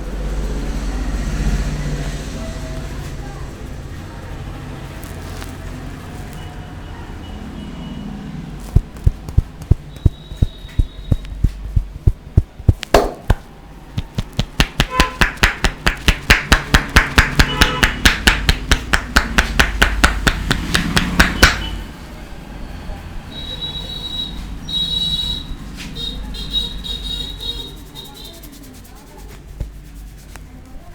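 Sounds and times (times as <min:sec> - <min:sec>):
rhythmic hand strikes on head: 0:08.7 - 0:21.7.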